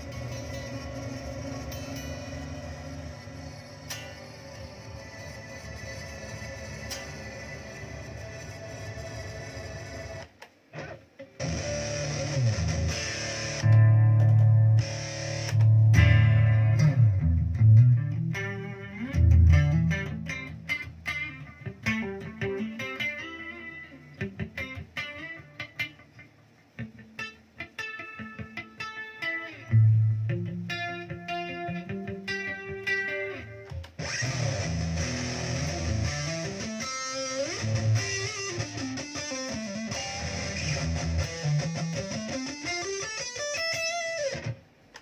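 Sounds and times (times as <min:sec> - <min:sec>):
electric guitar strummed chords: 0:00.0 - 0:10.2, 0:10.8 - 0:26.2, 0:26.8 - 0:44.7
electric guitar picked notes: 0:10.7 - 0:44.7.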